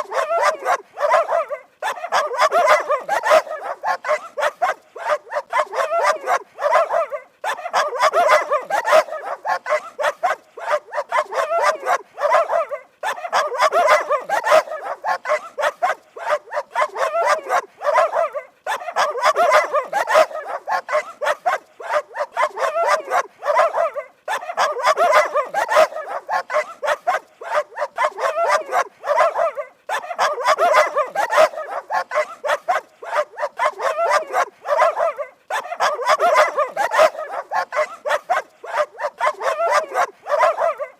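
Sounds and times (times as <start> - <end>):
dog barking rapidly: 0.0 - 40.9.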